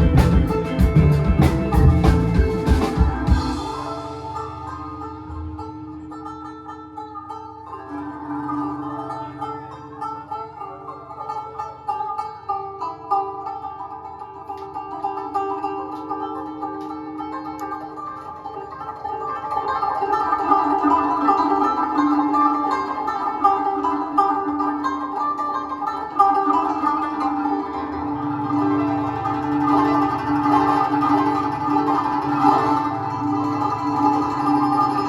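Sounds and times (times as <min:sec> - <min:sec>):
deep low instrumental part: 0:00.0 - 0:06.4
plucked zither notes: 0:00.0 - 0:35.0.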